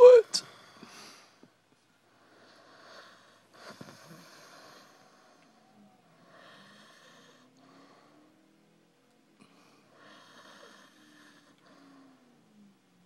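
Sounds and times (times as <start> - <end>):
person snoring: 9.4 - 12.3.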